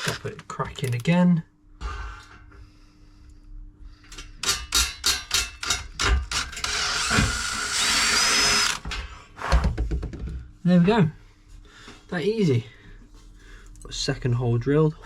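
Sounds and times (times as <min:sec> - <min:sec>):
power drill boring through metal: 0:05.6 - 0:08.8.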